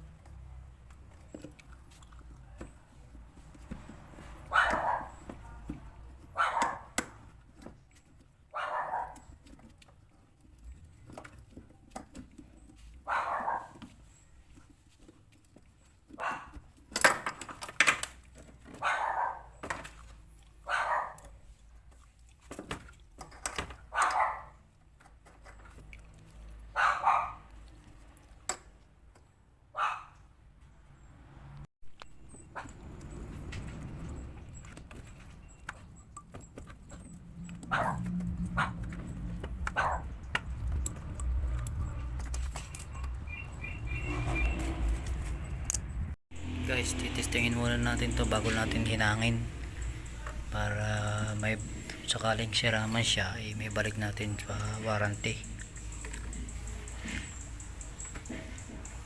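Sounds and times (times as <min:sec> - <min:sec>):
dog barking: 0:04.4 - 0:05.7, 0:06.3 - 0:07.0, 0:08.5 - 0:09.3, 0:13.0 - 0:13.8, 0:16.2 - 0:16.6, 0:18.8 - 0:19.6, 0:20.6 - 0:21.2, 0:23.9 - 0:24.6, 0:26.7 - 0:27.5, 0:29.7 - 0:30.2, 0:37.5 - 0:38.9, 0:39.6 - 0:40.2.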